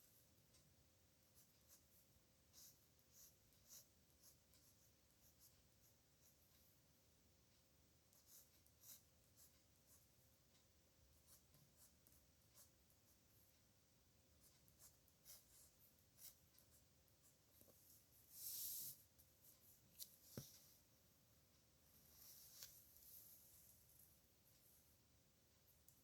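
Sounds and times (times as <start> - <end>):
pen scratching on paper: 1.3 - 6.8, 8.1 - 10.1, 11.1 - 13.5, 14.4 - 17.4.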